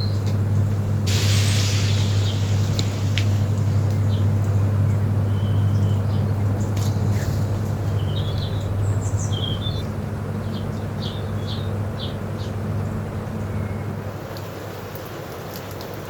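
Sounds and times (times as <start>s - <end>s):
rain hissing: 0.0s - 9.9s, 14.0s - 16.0s
low rumble: 0.0s - 10.5s
small birds chirping: 0.0s - 14.0s.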